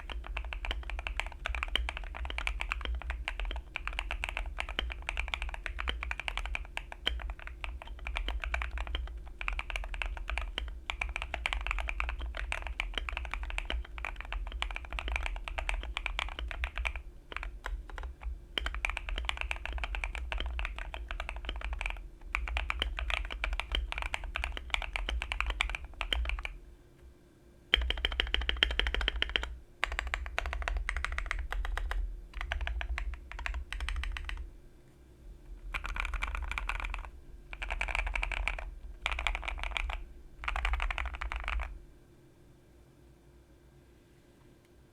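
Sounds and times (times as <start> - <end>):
keyboard typing: 0.0 - 26.6, 27.7 - 34.4, 35.7 - 41.8.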